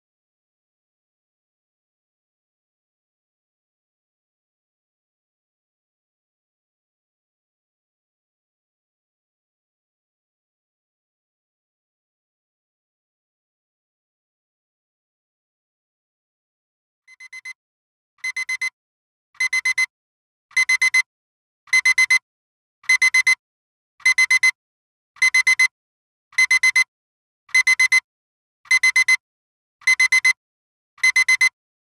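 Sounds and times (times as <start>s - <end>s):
alarm clock beeping: 17.1s - 17.6s, 18.2s - 18.7s, 19.4s - 19.9s, 20.6s - 21.1s, 21.7s - 22.2s, 22.9s - 23.4s, 24.1s - 24.6s, 25.2s - 25.7s, 26.4s - 26.9s, 27.6s - 28.0s, 28.7s - 29.2s, 29.9s - 30.4s, 31.0s - 31.5s.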